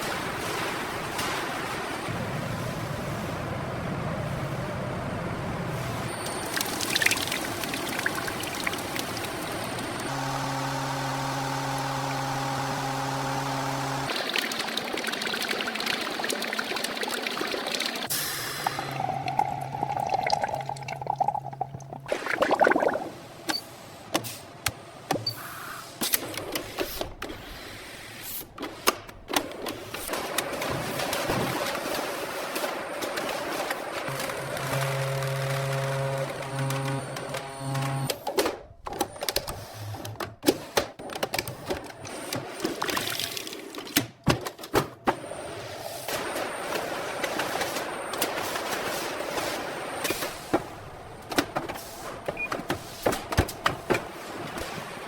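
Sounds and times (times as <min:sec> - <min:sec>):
running splashing water: 0:06.2 - 0:10.1, 0:14.1 - 0:18.1, 0:18.8 - 0:23.2
machine hum: 0:07.5 - 0:14.1.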